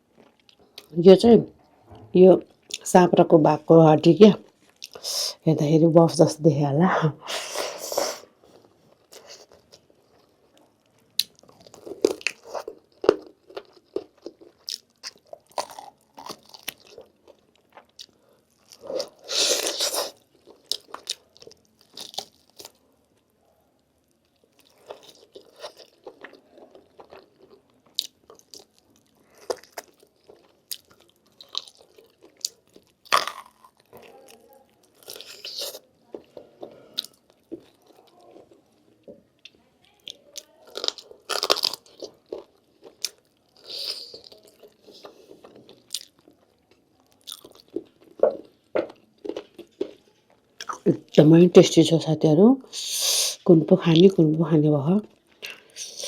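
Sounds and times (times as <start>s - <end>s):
person chewing meat off bone: 7.9s - 22.8s, 24.2s - 38.6s, 40.6s - 50.8s.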